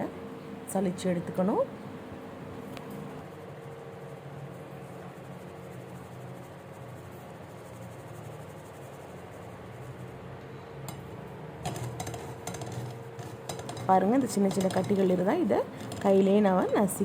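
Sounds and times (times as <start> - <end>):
background hum and hiss: 0.0 - 17.0
strainer tapping over a bowl: 10.9 - 16.3.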